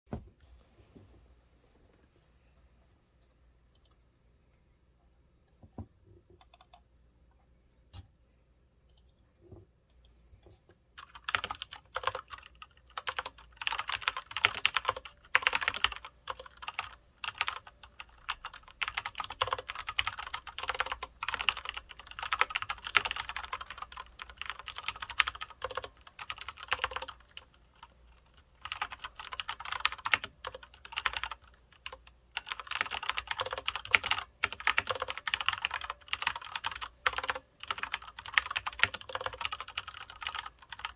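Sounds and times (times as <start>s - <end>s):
mechanical keyboard typing: 6.4s - 6.8s, 11.0s - 40.9s.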